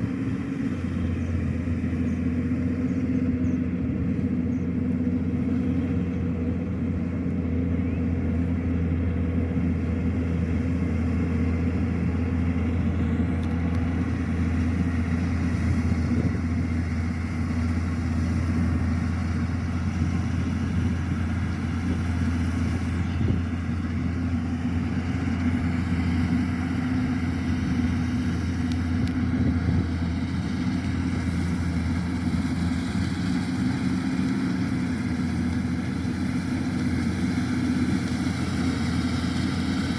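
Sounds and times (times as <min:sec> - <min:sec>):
combine harvester engine running: 0:00.0 - 0:39.9.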